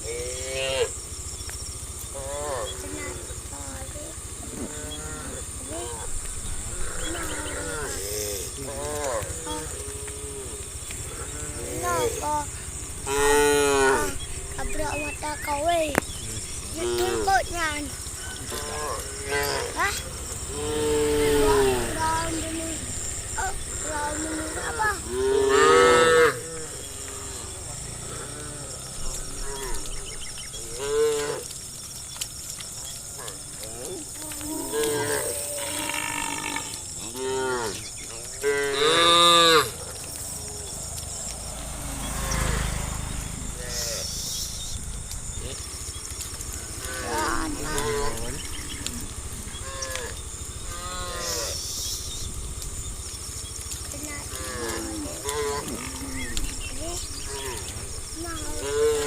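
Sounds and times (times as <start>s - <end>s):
cattle mooing: 0.0s - 1.0s, 2.2s - 3.4s, 4.4s - 15.2s, 16.2s - 31.5s, 33.1s - 40.8s, 41.6s - 44.2s, 46.5s - 51.7s, 54.2s - 59.0s
low rumble: 40.0s - 54.4s.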